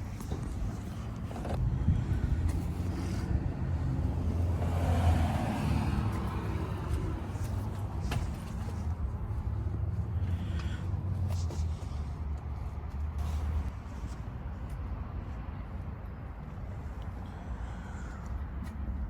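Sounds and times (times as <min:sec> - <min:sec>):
vehicle passing: 0:01.6 - 0:13.7.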